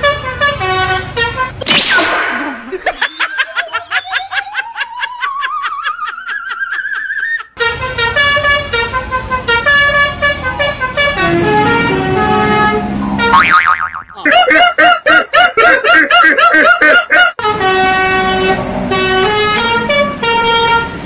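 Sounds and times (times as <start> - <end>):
musical bus horn tune: 0.0 - 1.6, 7.6 - 13.5, 17.4 - 21.0.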